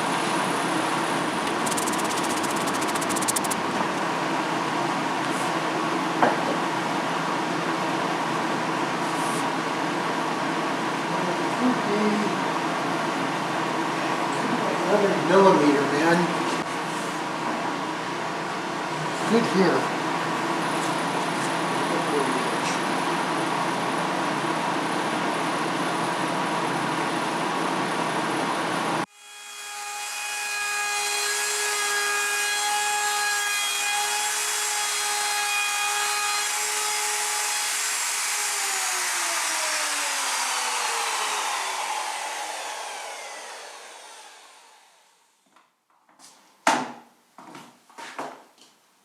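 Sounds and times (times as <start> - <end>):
power tool cutting wood: 0.1 - 3.6, 29.1 - 45.0
motor whining: 1.4 - 3.6.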